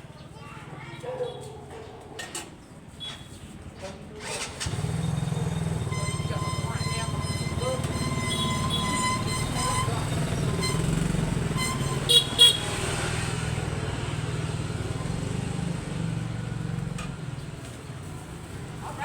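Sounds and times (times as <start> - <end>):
vehicle engine running: 4.6 - 19.0
car horn toots: 4.7 - 12.9.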